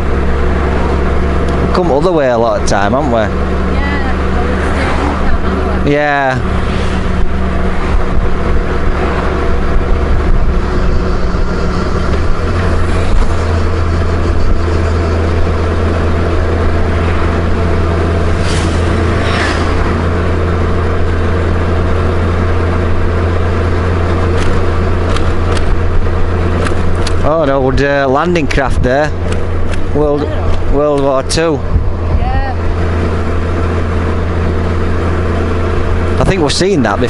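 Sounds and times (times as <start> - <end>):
motorcycle engine and road drone: 0.0 - 37.0
brief higher sweeps: 18.3 - 20.0.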